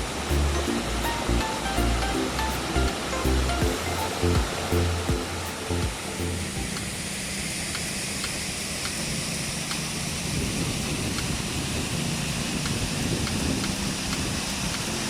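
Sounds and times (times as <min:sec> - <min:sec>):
rushing water: 0:00.0 - 0:15.0.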